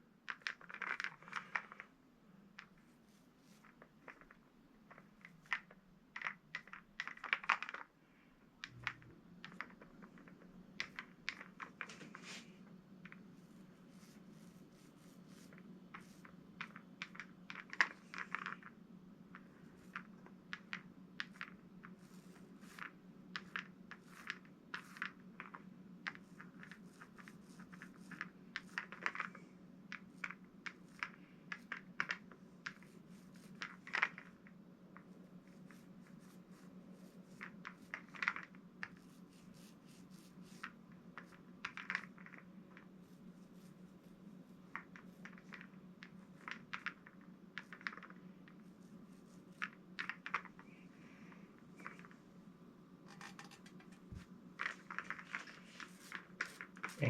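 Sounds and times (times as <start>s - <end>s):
foam paint roller crackling: 9.4s - 18.7s, 21.2s - 29.4s, 35.4s - 47.0s, 53.6s - 57.0s.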